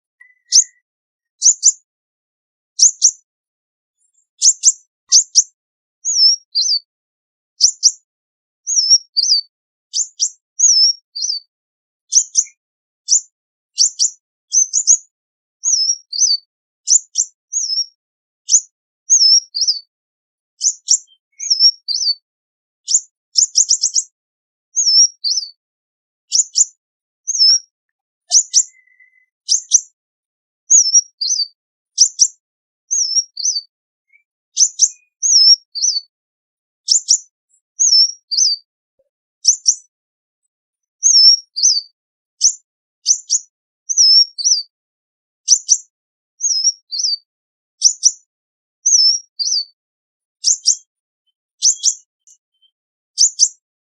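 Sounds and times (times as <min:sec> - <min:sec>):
bird high thin chirps: 0:00.2 - 0:01.9, 0:02.8 - 0:03.2, 0:04.1 - 0:06.9, 0:07.6 - 0:08.0, 0:08.6 - 0:11.5, 0:12.1 - 0:19.9, 0:20.6 - 0:22.2, 0:22.9 - 0:24.2, 0:24.8 - 0:25.6, 0:26.3 - 0:29.9, 0:30.7 - 0:36.1, 0:36.8 - 0:38.7, 0:39.4 - 0:39.9, 0:41.0 - 0:44.7, 0:45.5 - 0:48.2, 0:48.9 - 0:49.8, 0:50.4 - 0:53.6.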